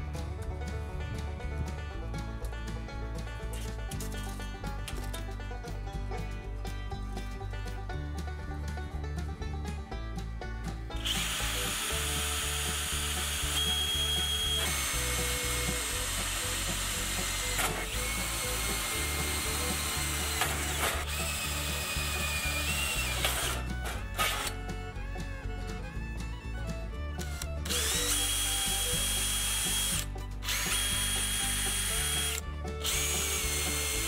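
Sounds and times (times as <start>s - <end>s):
cordless drill motor whining: 11.0s - 24.8s, 27.3s - 34.0s.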